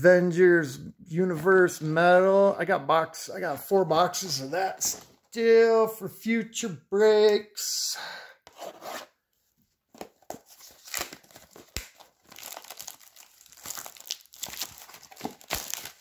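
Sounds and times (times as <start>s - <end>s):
plastic wrap crinkling and tearing: 10.4s - 16.0s.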